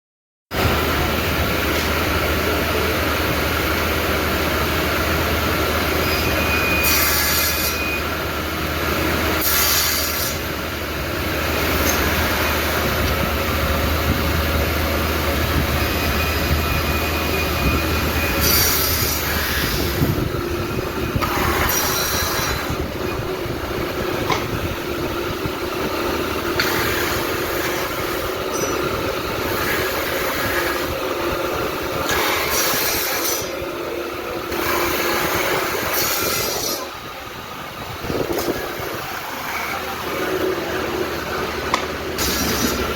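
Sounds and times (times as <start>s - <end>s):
woodworking machine humming: 0.6s - 42.9s
brief squeal: 6.0s - 8.1s
hissing bursts of wood cutting: 9.3s - 10.6s, 42.1s - 42.9s.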